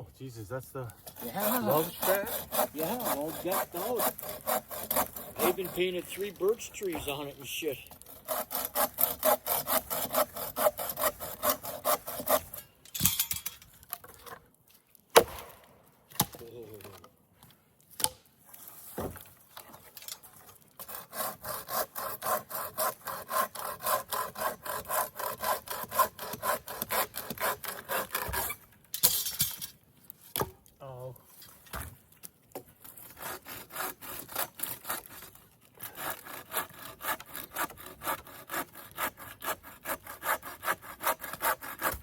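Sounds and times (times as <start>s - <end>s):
hand saw cutting wood: 1.0s - 12.8s, 20.7s - 28.6s, 32.8s - 42.0s.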